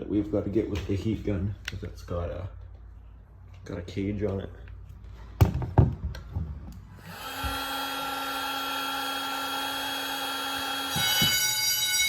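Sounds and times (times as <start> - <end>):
heat gun whirring hiss: 7.0 - 11.5
fire alarm ringing: 10.2 - 12.0.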